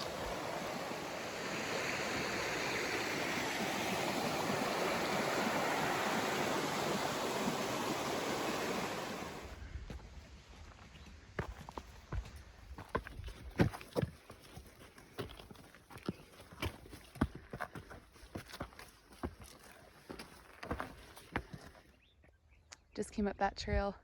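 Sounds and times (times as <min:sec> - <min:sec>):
creek water rushing over rocks: 0:00.0 - 0:09.6.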